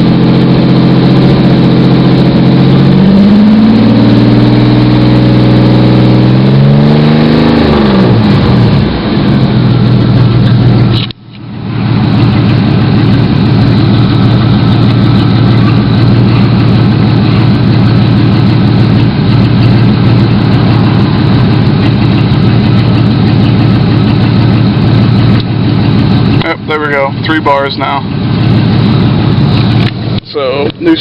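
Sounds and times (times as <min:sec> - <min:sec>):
car engine idling: 0:00.0 - 0:31.0.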